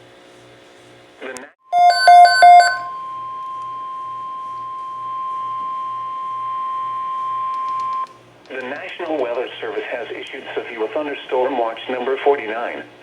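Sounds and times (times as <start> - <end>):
steady high-pitched alarm tone: 1.7 - 8.1.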